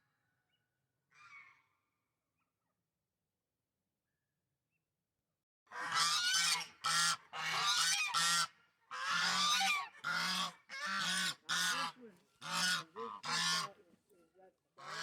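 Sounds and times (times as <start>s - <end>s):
geese honking: 5.9s - 13.8s, 14.8s - 15.0s.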